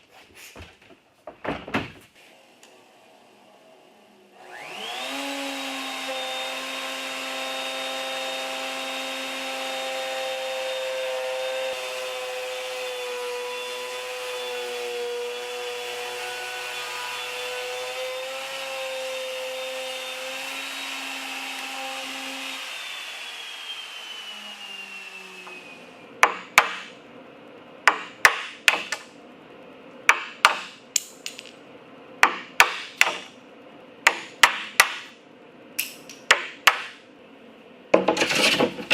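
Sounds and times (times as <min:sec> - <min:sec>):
power tool motor whining: 0:04.4 - 0:09.1, 0:19.0 - 0:25.9.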